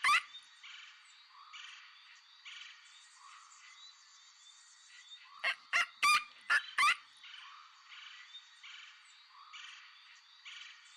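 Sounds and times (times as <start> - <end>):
sharp animal calls: 0.0 - 0.2.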